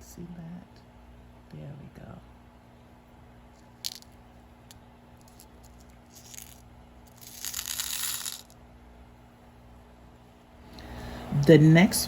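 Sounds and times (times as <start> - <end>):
crinkling rattle of beads packet: 3.6 - 4.2, 5.2 - 8.6
metal beads clicking: 3.7 - 8.6
packet rustling: 5.2 - 8.6.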